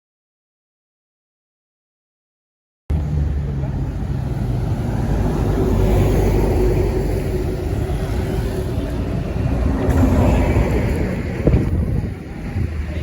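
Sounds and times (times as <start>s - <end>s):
bus engine and tyre noise: 2.9s - 13.0s.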